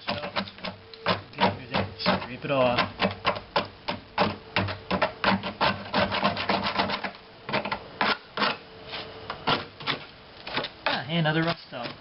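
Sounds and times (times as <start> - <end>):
putty knife scraping metal: 0.0 - 11.9.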